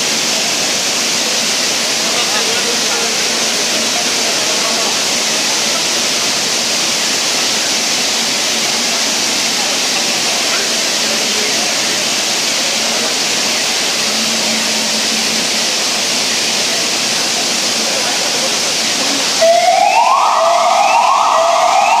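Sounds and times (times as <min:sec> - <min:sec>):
emergency vehicle siren whooping: 0:19.4 - 0:22.0.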